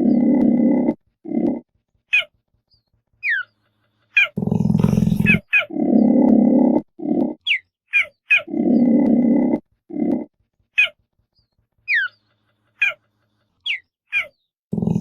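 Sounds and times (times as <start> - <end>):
cheetah growling: 0.0 - 1.7, 4.3 - 7.5, 8.3 - 10.4, 14.7 - 15.0
cheetah chirping: 2.1 - 2.3, 3.2 - 3.5, 4.2 - 6.2, 7.1 - 8.9, 10.8 - 11.0, 11.9 - 12.2, 12.8 - 13.0, 13.6 - 14.4.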